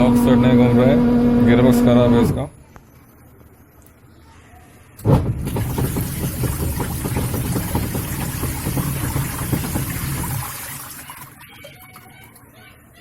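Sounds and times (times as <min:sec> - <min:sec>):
washing machine motor humming: 0:00.0 - 0:02.5, 0:05.4 - 0:12.4
washing machine rattling and knocking: 0:05.1 - 0:12.0.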